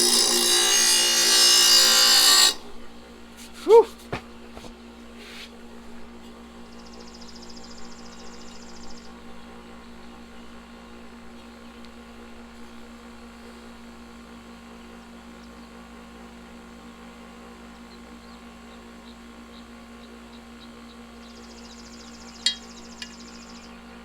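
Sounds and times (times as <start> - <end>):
bench grinder motor humming: 0.0 - 2.9.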